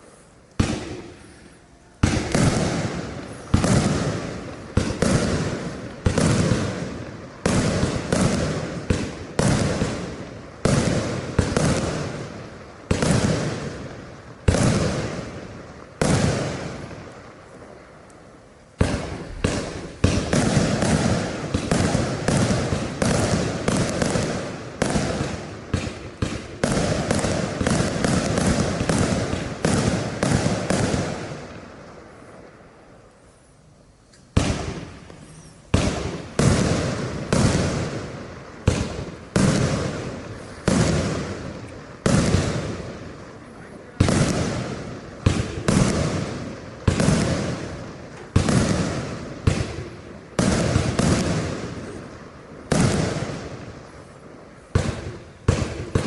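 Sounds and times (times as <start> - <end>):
fireworks bangs: 0.0 - 56.0.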